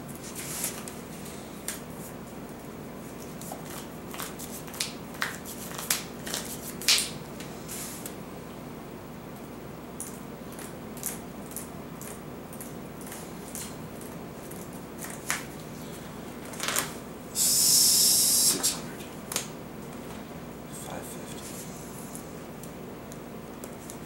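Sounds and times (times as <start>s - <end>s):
loud hiss: 17.3s - 18.9s.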